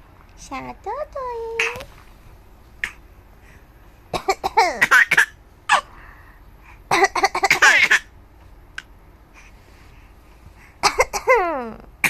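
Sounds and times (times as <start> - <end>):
person coughing: 10.8 - 11.5.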